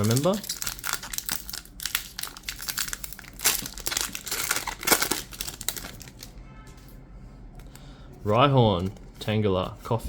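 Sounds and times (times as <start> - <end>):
foil wrapper crinkling: 0.0 - 6.3.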